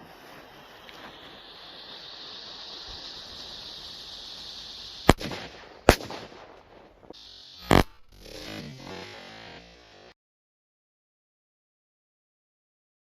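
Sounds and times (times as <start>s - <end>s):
firecracker fuse hissing: 0.0s - 10.2s
firecracker bangs: 4.8s - 8.6s.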